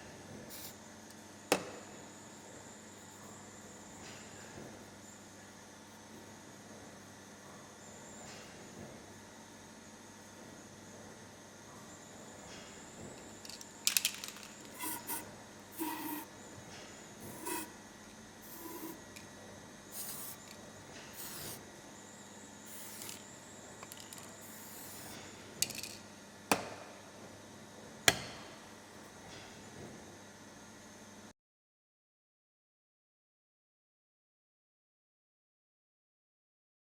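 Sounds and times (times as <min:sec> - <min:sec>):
short hissing rubbing bursts: 0:14.7 - 0:16.3, 0:17.2 - 0:17.8, 0:18.4 - 0:19.0, 0:20.0 - 0:20.4, 0:21.2 - 0:21.6.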